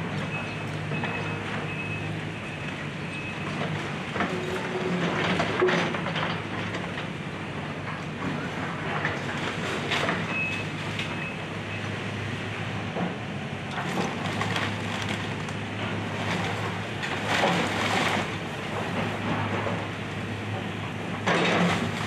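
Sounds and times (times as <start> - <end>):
diesel engine running: 0.0 - 22.0
debris crashing and crunching: 13.7 - 19.2.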